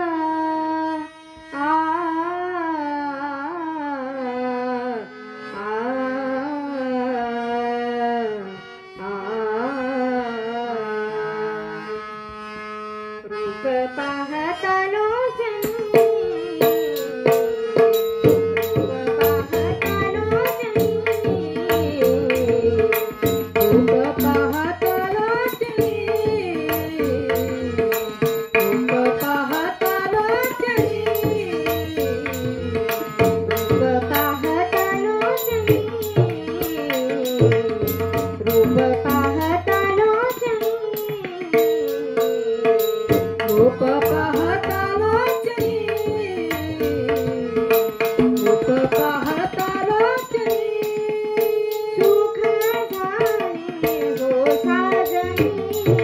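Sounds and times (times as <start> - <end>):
tabla playing: 15.3 - 56.0.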